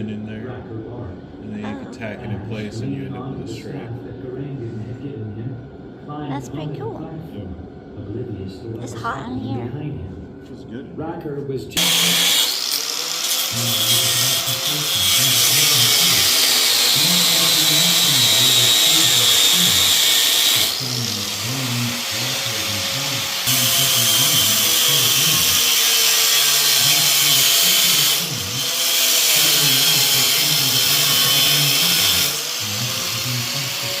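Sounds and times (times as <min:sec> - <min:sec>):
power tool hissing and whining: 0:11.8 - 0:34.0.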